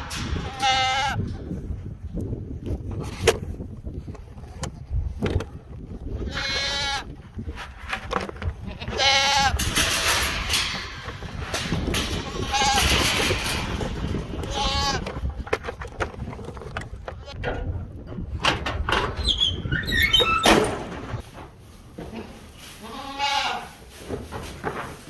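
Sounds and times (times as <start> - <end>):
goats bleating: 8.7 - 9.6, 22.0 - 23.7.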